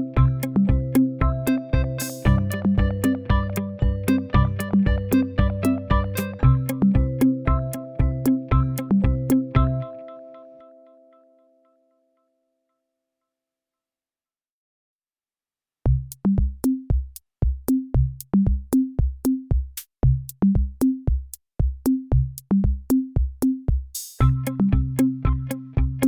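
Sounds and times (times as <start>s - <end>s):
electronic music drum-machine beat: 0.0s - 9.9s, 15.9s - 26.0s.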